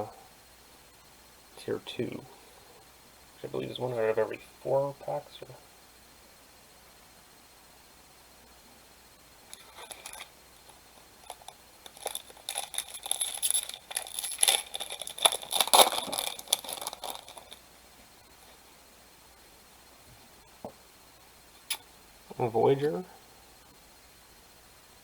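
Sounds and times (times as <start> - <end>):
plastic wrapper tearing and crinkling: 9.5 - 17.6.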